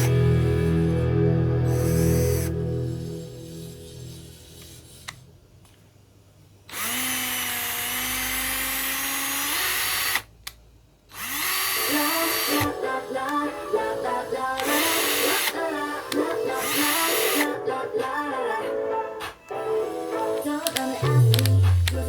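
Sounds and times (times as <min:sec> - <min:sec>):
drill motor running: 0:01.7 - 0:02.5, 0:06.7 - 0:10.2, 0:11.2 - 0:12.7, 0:14.6 - 0:17.5.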